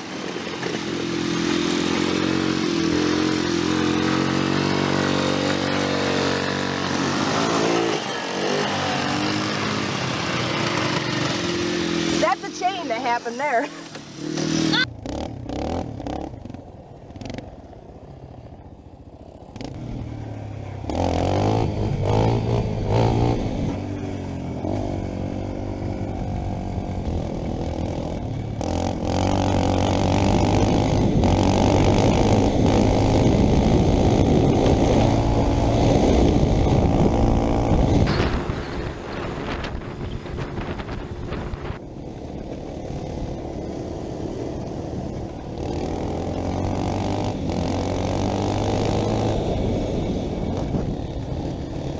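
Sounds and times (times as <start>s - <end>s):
atv engine revving: 0.0s - 51.9s.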